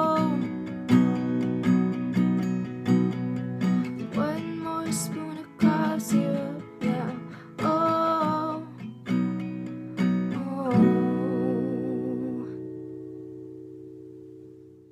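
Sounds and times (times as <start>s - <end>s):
acoustic guitar strumming chords: 0.0s - 14.9s.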